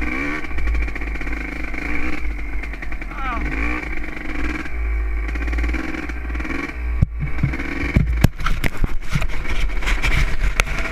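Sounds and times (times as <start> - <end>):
dirt bike engine running: 0.0 - 10.9
sharp knocks and clicks: 7.0 - 10.8.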